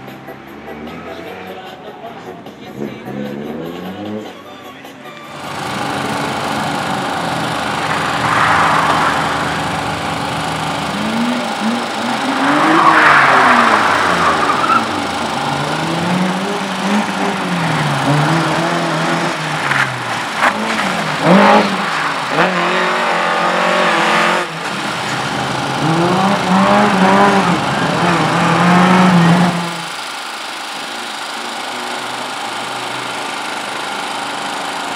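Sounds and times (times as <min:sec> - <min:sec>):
car engine revving: 0:05.3 - 0:34.9
tyres squealing: 0:10.8 - 0:23.2.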